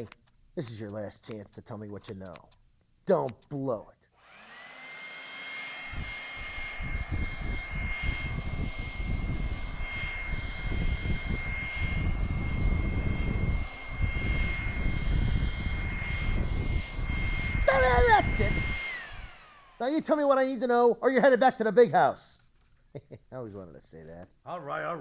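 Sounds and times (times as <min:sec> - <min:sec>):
hair dryer blowing: 0:04.2 - 0:20.2.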